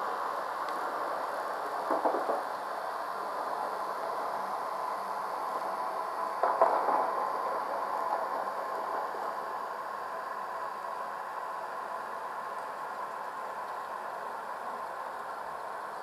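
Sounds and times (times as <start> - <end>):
electric train noise: 0.0 - 11.9.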